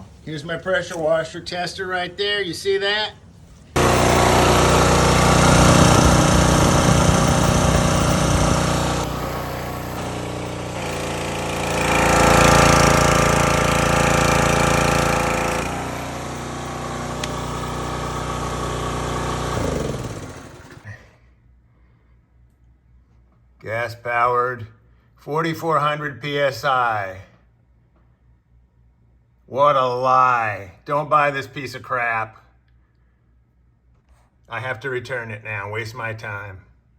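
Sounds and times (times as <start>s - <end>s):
pressure washer engine running: 3.8s - 20.8s.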